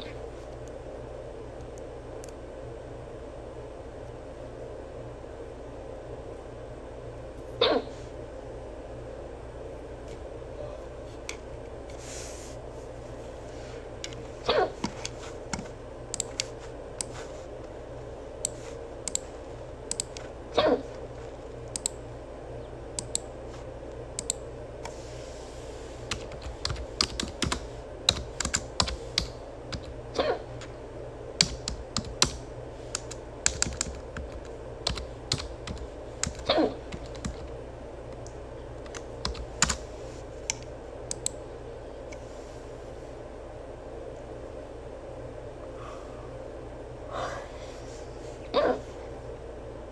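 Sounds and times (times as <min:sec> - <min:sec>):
person hiccuping: 0:07.6 - 0:08.0, 0:14.4 - 0:14.8, 0:20.5 - 0:20.9, 0:30.2 - 0:30.5, 0:36.5 - 0:36.8, 0:48.5 - 0:48.8
rapid clicking taps: 0:33.0 - 0:37.5.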